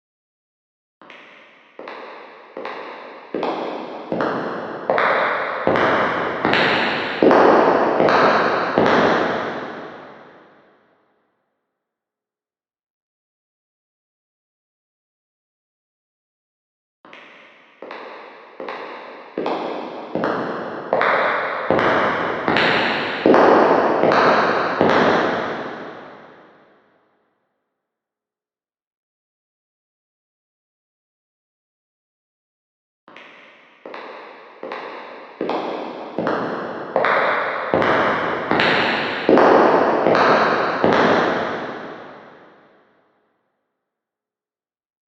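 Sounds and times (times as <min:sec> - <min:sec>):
echoing footsteps: 0:01.2 - 0:10.4, 0:17.6 - 0:26.4, 0:33.8 - 0:42.6.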